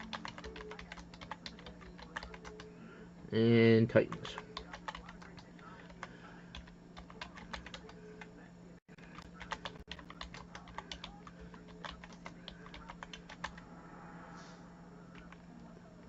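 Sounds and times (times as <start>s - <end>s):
computer keyboard typing: 0.0s - 2.6s, 4.1s - 8.0s, 9.0s - 13.6s, 15.2s - 15.4s.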